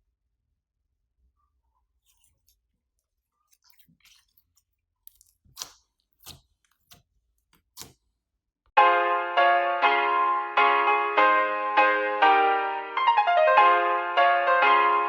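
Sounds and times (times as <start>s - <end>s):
slime squishing in plastic bag: 2.0s - 8.1s
piano music: 8.8s - 15.0s.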